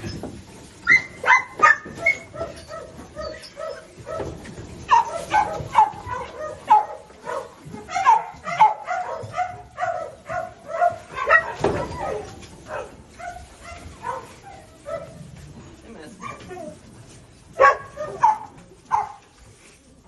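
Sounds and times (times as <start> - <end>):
puppies yipping and barking: 0.0 - 15.3.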